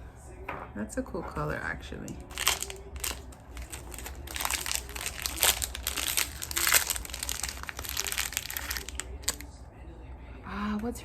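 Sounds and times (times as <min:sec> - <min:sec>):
plastic bags crinkling: 0:02.2 - 0:09.4.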